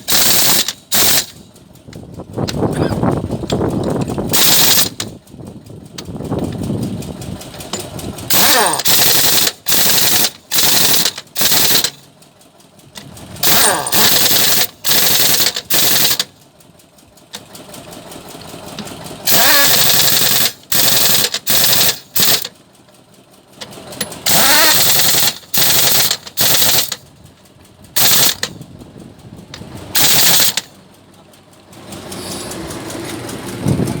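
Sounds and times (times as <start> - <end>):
air impact wrench hammering: 0.0 - 1.4, 4.0 - 5.2, 7.6 - 12.0, 13.4 - 16.3, 19.2 - 22.5, 24.0 - 27.0, 28.0 - 28.5, 29.9 - 30.7.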